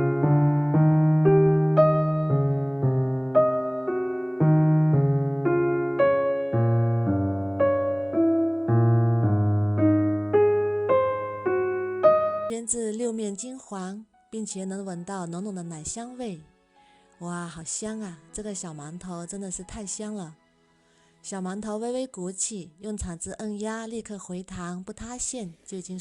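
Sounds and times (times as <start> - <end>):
gentle electric piano melody: 0.0 - 12.5
low bass line: 4.4 - 12.5.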